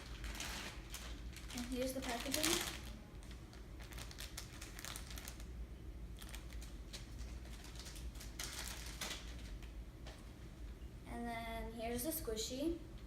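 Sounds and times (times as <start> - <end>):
plastic packaging crinkling: 0.0 - 9.7.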